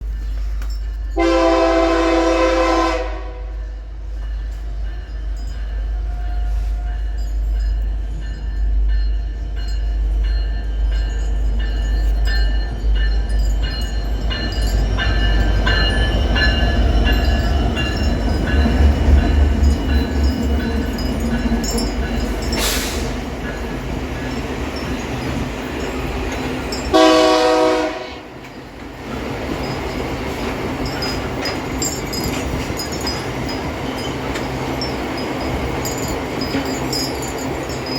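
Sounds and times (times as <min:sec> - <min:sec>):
train wheels clicking on rails: 0:00.0 - 0:02.1, 0:03.5 - 0:37.9
locomotive air horn blast: 0:01.2 - 0:03.6, 0:22.6 - 0:23.2, 0:26.9 - 0:28.3.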